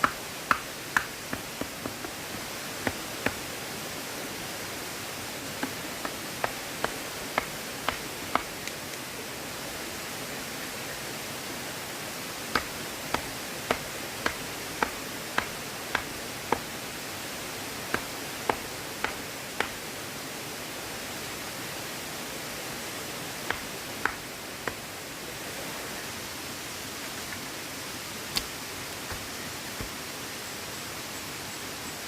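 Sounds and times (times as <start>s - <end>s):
steady rushing noise: 0.0s - 10.1s, 11.2s - 21.4s.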